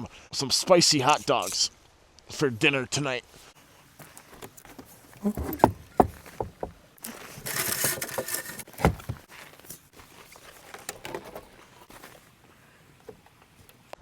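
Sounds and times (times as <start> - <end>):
sharp knocks: 5.4 - 6.8.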